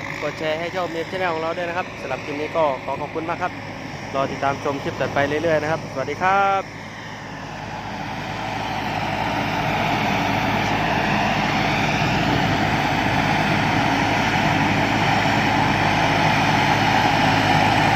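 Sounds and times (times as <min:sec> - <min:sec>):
combine harvester engine running: 0:00.0 - 0:17.9.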